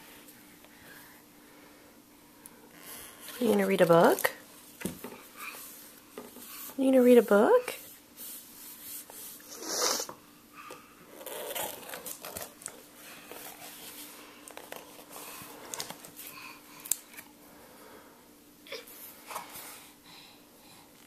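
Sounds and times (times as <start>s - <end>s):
soft rustling and crinkling: 2.7s - 9.4s, 11.1s - 17.3s.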